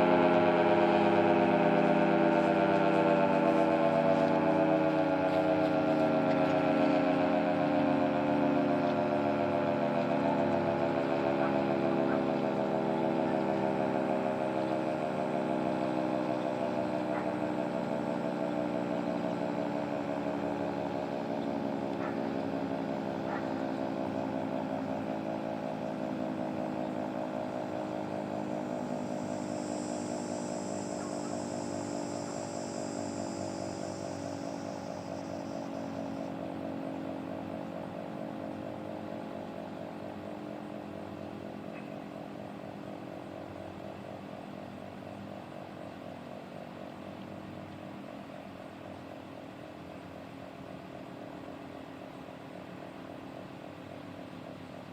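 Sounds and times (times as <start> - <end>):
warning siren winding down: 0.0 - 41.6.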